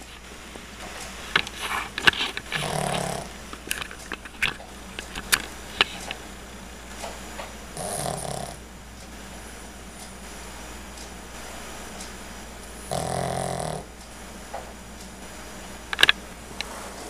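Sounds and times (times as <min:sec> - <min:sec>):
dog snoring: 0:02.5 - 0:03.4, 0:07.7 - 0:08.7, 0:12.8 - 0:13.9.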